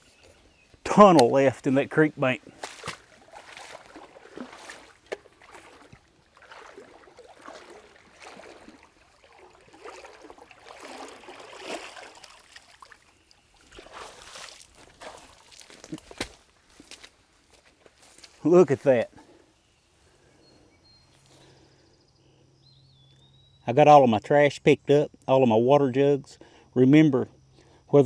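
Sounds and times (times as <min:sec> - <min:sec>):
water sloshing and trickling: 0:00.0 - 0:19.3.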